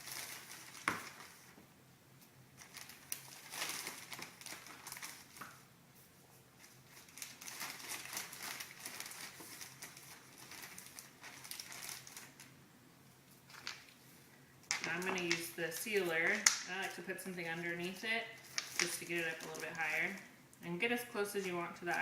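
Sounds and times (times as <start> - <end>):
plastic bag rustling and crinkling: 0.0 - 1.6, 2.6 - 12.6, 13.3 - 22.0.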